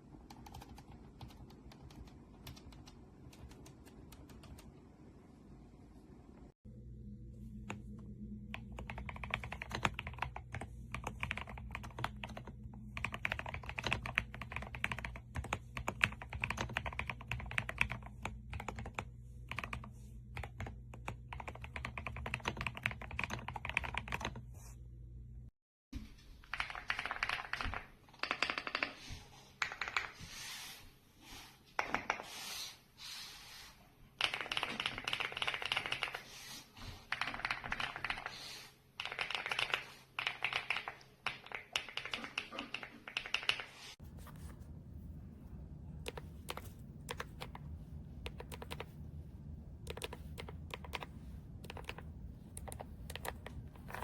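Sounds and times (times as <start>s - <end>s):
low steady hum: 0.0s - 25.5s, 44.0s - 54.0s
mechanical keyboard typing: 0.2s - 4.7s, 8.5s - 24.4s, 26.5s - 28.9s, 34.2s - 36.2s, 37.1s - 38.4s, 39.0s - 43.7s, 46.0s - 48.9s, 49.8s - 54.0s.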